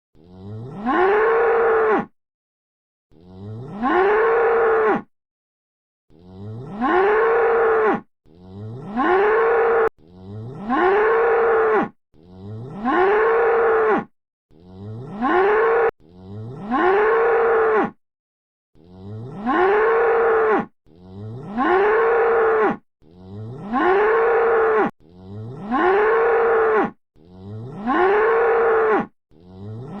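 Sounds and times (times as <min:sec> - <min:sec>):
bull mooing: 0:18.8 - 0:30.0.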